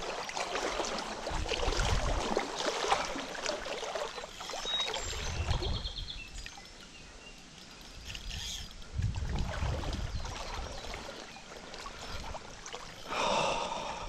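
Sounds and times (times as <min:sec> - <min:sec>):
stream water splashing: 0:00.0 - 0:14.0.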